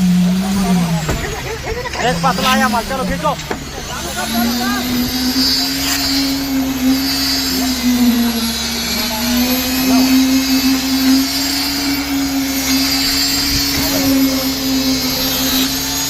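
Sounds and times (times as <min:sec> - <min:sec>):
construction machinery hum: 0:00.0 - 0:16.0.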